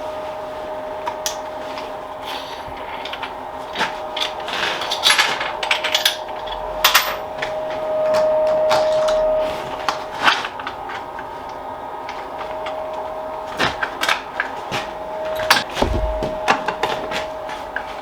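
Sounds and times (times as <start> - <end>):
steady hum: 14.9 - 16.8.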